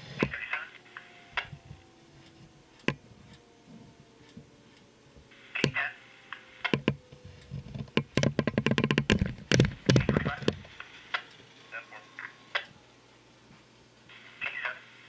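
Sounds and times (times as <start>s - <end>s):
sharp clicks and ticks: 1.0s - 4.9s, 5.6s - 11.4s.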